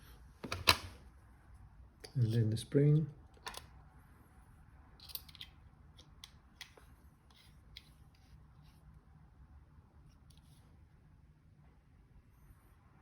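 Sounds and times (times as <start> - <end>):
small metal parts clicking: 5.0 - 6.8.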